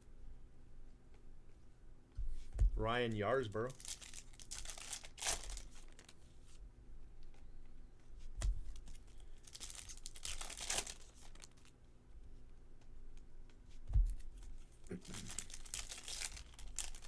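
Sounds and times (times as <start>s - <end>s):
foil wrappers crinkling and tearing: 3.6s - 6.3s, 8.6s - 11.7s, 14.3s - 17.0s.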